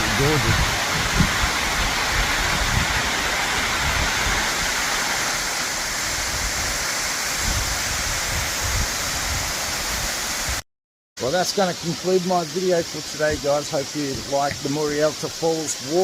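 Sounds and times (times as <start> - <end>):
waterfall rushing: 0.0 - 10.6, 11.2 - 16.0.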